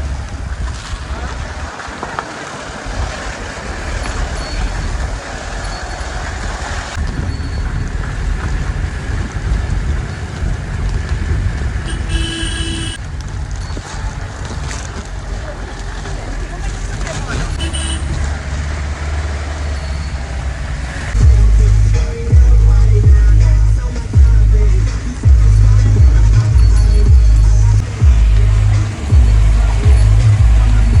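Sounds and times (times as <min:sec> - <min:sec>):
jeep engine rumble: 0:00.0 - 0:31.0
car horn: 0:11.8 - 0:13.0, 0:17.5 - 0:21.2, 0:26.7 - 0:31.0.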